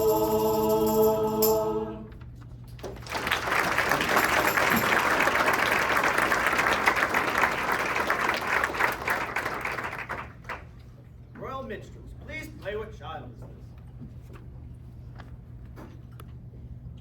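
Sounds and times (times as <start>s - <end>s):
choir holding a chord: 0.0s - 2.2s
audience applause: 2.8s - 10.7s.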